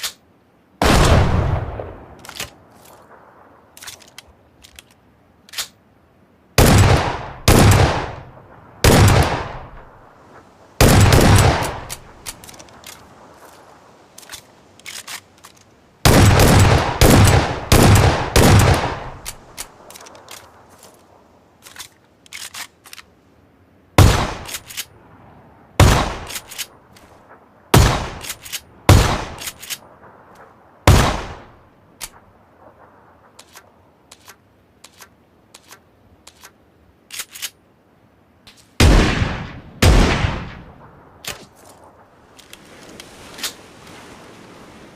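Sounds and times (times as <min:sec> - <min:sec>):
loud single gunshots: 0:06.6 - 0:09.7, 0:10.8 - 0:11.9, 0:24.0 - 0:24.5, 0:25.8 - 0:26.3, 0:27.7 - 0:28.2, 0:28.9 - 0:29.4, 0:30.9 - 0:31.5, 0:38.8 - 0:40.8
faint clicks: 0:32.0 - 0:37.6.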